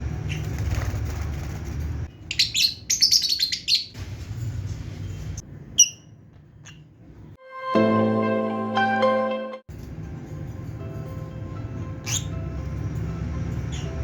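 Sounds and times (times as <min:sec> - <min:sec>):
lovebirds chirping: 0:02.1 - 0:04.0, 0:05.0 - 0:06.9, 0:11.8 - 0:14.0.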